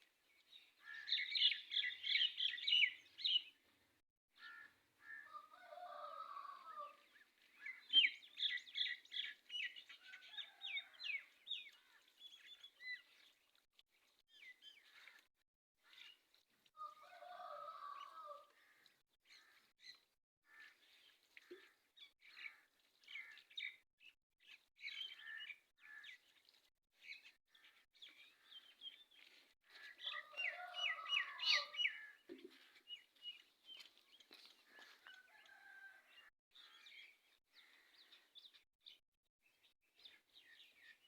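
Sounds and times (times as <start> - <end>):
small birds chirping: 0.3 - 3.6, 7.0 - 15.2, 24.4 - 35.8
chickens calling: 29.9 - 32.6.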